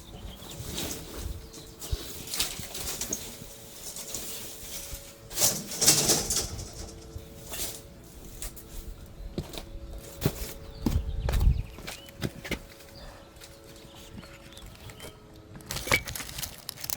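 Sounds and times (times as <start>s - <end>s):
palm fronds rustling: 0.0s - 10.6s.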